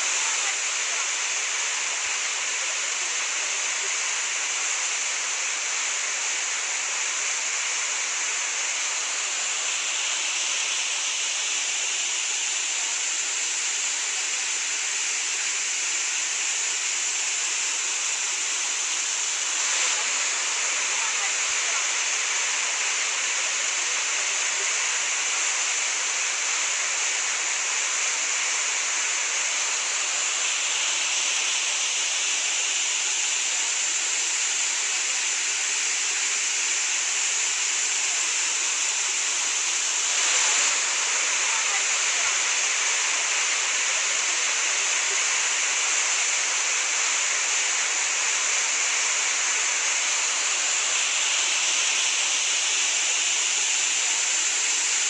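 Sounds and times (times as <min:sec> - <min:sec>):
waterfall rushing: 0:00.0 - 0:55.0.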